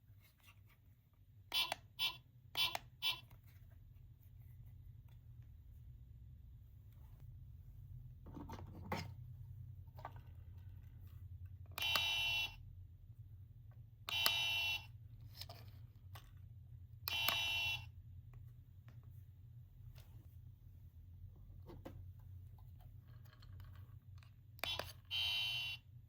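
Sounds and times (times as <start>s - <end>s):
buzzy electronic toy tone: 1.5s - 3.3s, 11.8s - 12.6s, 14.1s - 14.9s, 17.1s - 17.9s, 24.7s - 25.8s.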